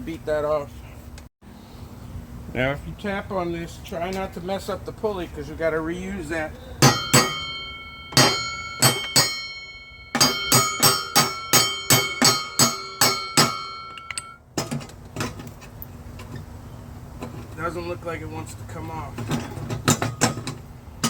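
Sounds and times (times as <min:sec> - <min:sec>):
hammer blows ringing on metal: 0:06.8 - 0:14.4.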